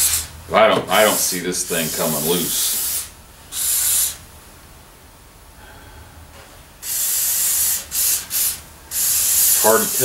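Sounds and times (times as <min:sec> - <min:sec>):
aerosol can spraying: 0:01.1 - 0:04.2, 0:06.8 - 0:10.0.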